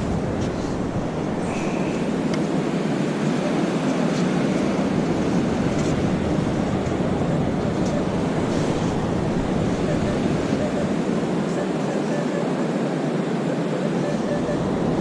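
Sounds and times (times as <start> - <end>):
faint high beep: 9.8 - 12.6, 13.8 - 15.0.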